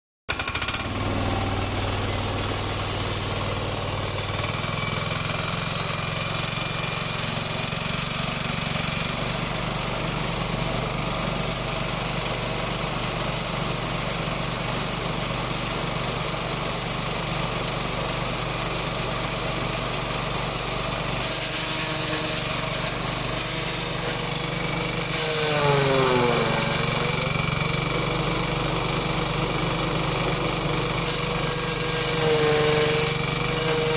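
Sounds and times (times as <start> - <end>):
falling whine: 0.3 - 6.1, 21.4 - 33.9
farm machine humming: 0.3 - 33.9.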